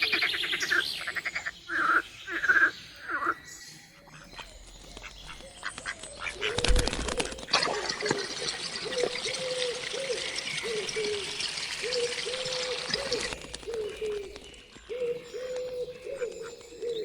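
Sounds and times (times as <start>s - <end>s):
ducks calling: 4.3s - 17.0s
splash in water: 6.2s - 14.6s
water washing: 6.4s - 16.5s.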